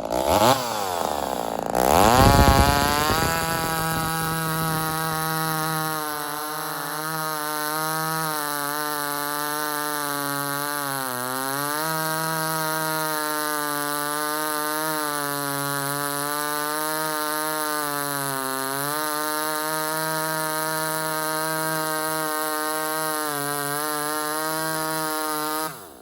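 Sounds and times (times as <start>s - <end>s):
chainsaw engine at high revs: 0.0s - 26.0s.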